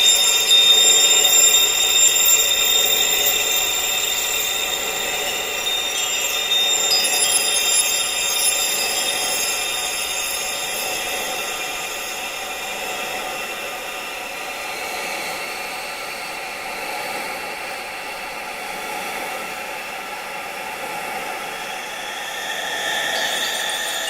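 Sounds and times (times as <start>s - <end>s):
wind chimes ringing: 0.0s - 14.4s, 21.8s - 24.0s.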